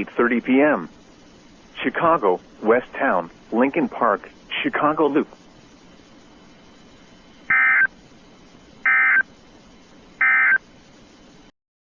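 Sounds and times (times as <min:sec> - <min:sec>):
shrill warbling data bursts: 0:07.5 - 0:07.9.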